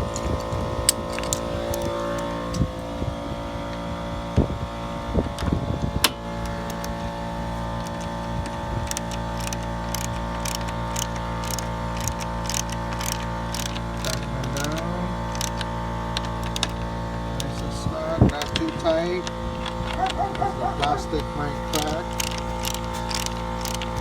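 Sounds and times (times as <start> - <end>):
socket wrench ratcheting: 0.0 - 2.6, 6.0 - 7.0, 7.8 - 24.0
mechanical hum: 0.0 - 24.0.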